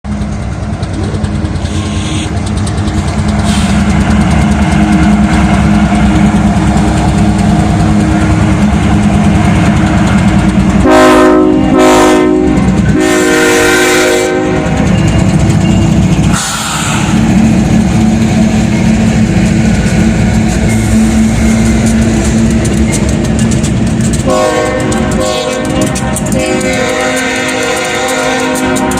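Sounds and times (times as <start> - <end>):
freight train rumbling: 0.0 - 28.9
train horn blasts: 1.7 - 2.3, 10.8 - 14.9, 24.2 - 28.9.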